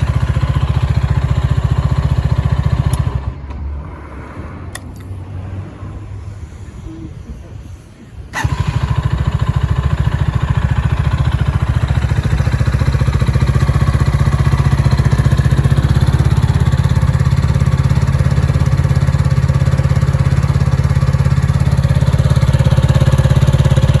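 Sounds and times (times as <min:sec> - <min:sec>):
motorcycle engine idling: 0:00.0 - 0:03.4, 0:08.3 - 0:24.0.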